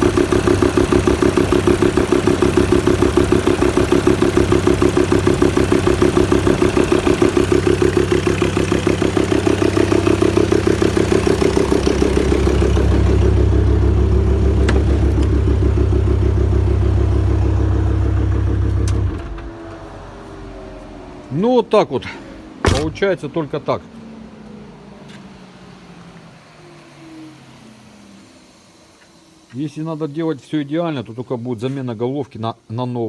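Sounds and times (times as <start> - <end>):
diesel engine idling: 0.0 - 20.6, 21.3 - 24.0.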